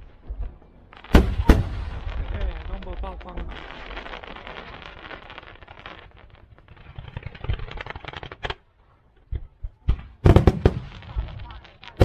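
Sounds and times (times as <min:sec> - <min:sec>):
fireworks crackling hiss: 0:00.0 - 0:08.7
fireworks popping: 0:00.0 - 0:12.0.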